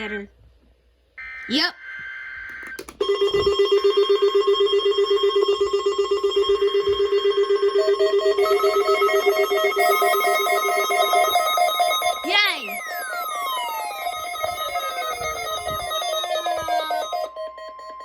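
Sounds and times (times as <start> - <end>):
pulsing alarm tone: 3.0 - 18.0
higher steady tones: 8.4 - 17.8.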